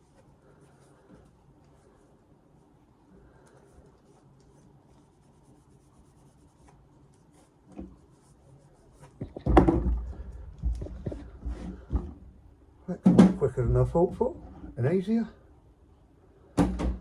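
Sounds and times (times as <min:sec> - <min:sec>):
handling noise: 0:09.0 - 0:14.8
knock: 0:09.2 - 0:12.2, 0:13.0 - 0:13.4, 0:16.6 - 0:17.0.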